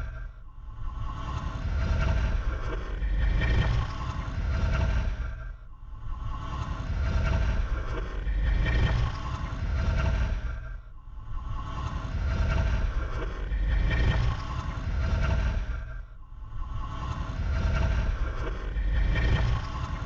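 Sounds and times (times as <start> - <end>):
ghostly deep breathing: 0.0 - 20.0.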